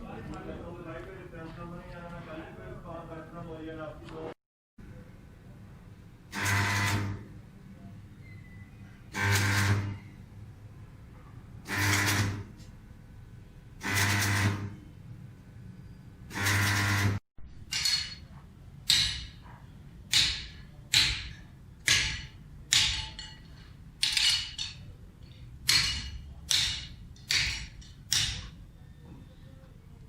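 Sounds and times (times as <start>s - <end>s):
loud buzz: 9.1s - 10.1s, 16.3s - 17.2s
hammer striking metal: 17.5s - 24.9s, 25.6s - 28.6s.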